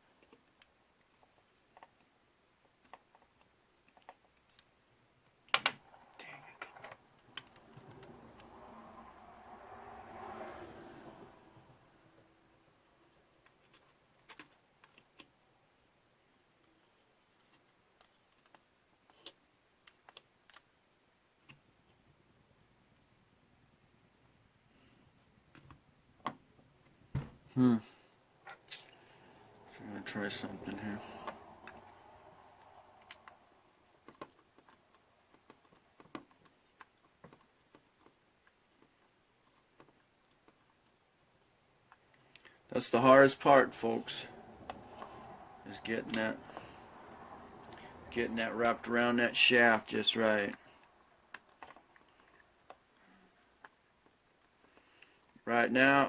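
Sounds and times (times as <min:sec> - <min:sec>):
small parts clicking and tapping: 0:13.4 - 0:15.3, 0:34.0 - 0:42.5.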